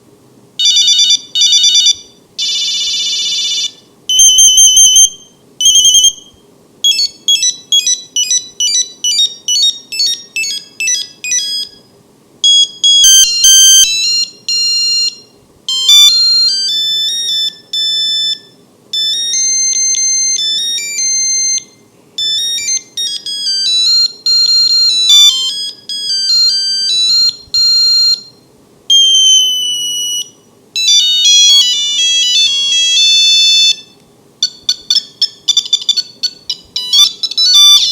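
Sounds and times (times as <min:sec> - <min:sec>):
monophonic ringtone melodies: 0:06.8 - 0:11.8, 0:12.4 - 0:28.3, 0:28.9 - 0:37.9.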